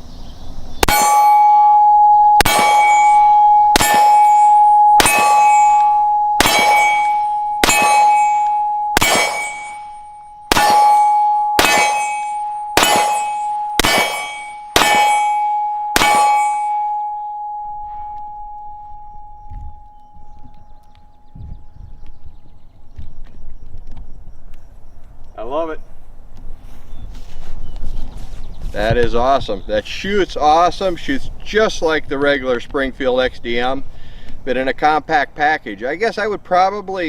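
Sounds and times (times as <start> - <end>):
steel target plate ringing: 0.8 - 21.6
pistol shots: 2.4 - 17.0.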